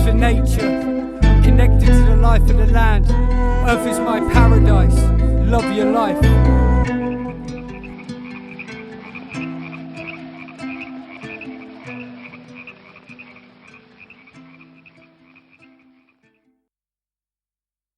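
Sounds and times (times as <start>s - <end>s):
held low musical notes: 0.0s - 12.6s
frogs croaking in chorus: 6.8s - 16.4s.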